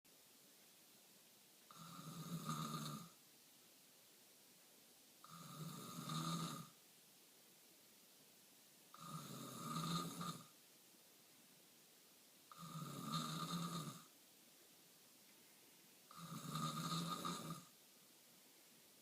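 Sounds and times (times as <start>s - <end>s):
person snoring: 1.7s - 3.2s, 5.2s - 6.8s, 8.9s - 10.5s, 12.5s - 14.1s, 16.1s - 17.7s.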